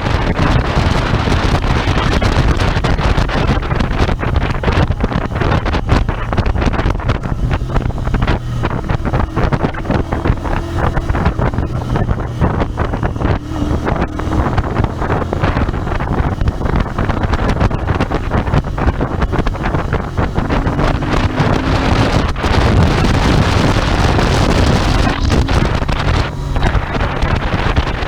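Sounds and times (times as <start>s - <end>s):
motorcycle engine running: 0.0s - 28.0s
wind buffeting microphone: 0.0s - 28.0s.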